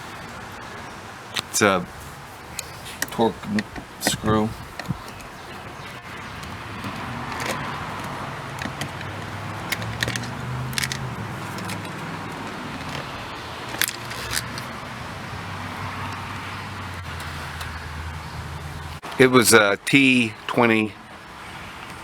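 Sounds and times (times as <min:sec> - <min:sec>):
metallic clicks and clinks: 0:07.3 - 0:13.1, 0:13.7 - 0:14.8.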